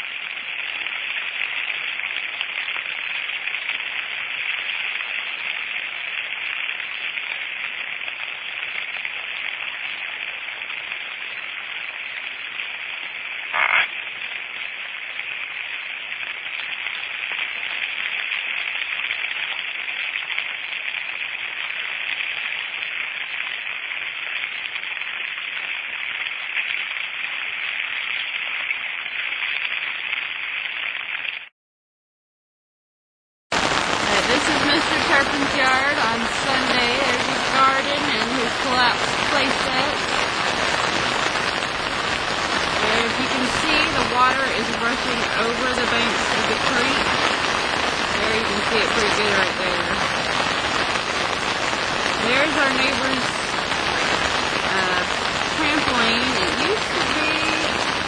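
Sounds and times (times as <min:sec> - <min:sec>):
louder crackle: 0:00.0 - 0:31.5, 0:33.5 - 0:58.0
chorus of frogs calling: 0:13.5 - 0:14.0.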